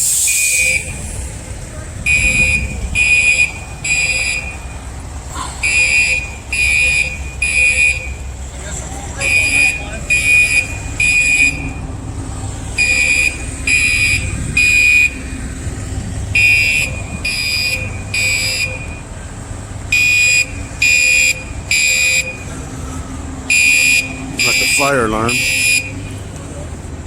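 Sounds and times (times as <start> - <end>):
low steady rumble: 0.0 - 27.0
fire alarm beeping: 2.1 - 4.8, 5.6 - 8.2, 9.2 - 11.8, 12.8 - 15.2, 16.4 - 19.1, 19.9 - 22.5, 23.5 - 26.2.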